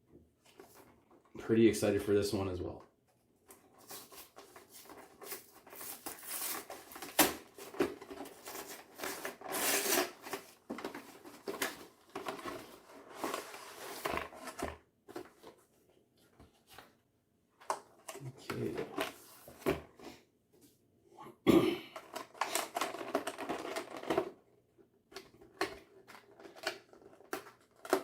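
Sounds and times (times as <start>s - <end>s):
cardboard box rustling and scraping: 3.8s - 15.5s.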